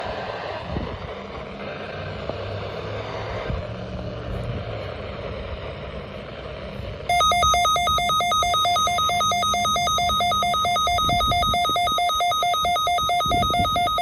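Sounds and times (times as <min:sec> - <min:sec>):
two-pitch electronic beeping: 0:07.1 - 0:14.0.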